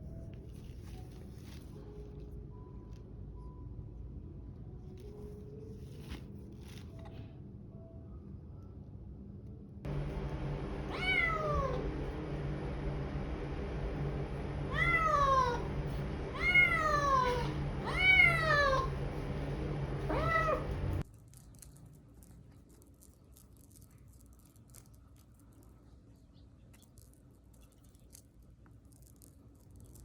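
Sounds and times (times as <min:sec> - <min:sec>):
steady low hum: 0:00.0 - 0:21.1
kitten meowing: 0:10.9 - 0:11.8, 0:14.7 - 0:15.6, 0:16.3 - 0:18.9, 0:20.1 - 0:20.7.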